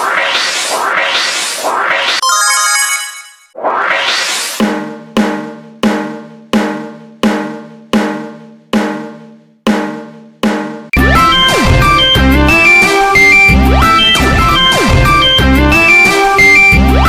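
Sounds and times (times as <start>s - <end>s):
loud electronic music: 0.0s - 3.2s, 11.0s - 17.0s.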